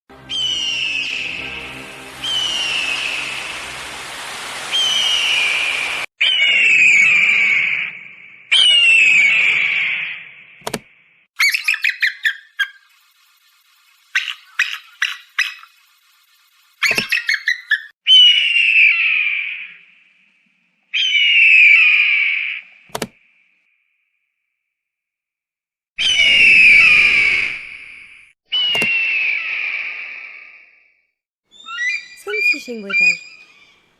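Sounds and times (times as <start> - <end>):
hiss with low hum: 1.2 - 6.1
eagle screams: 26.0 - 27.7.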